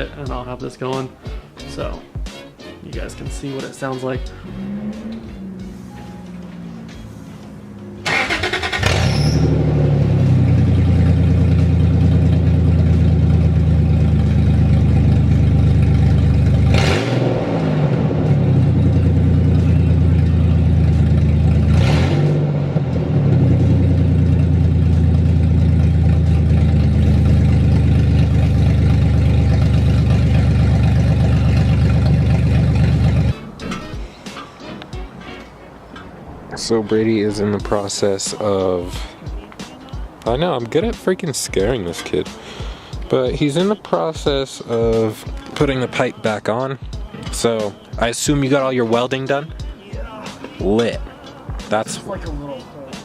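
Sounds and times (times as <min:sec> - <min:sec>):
truck engine starting and idling: 0:03.6 - 0:47.8
truck engine revving: 0:03.8 - 0:40.2.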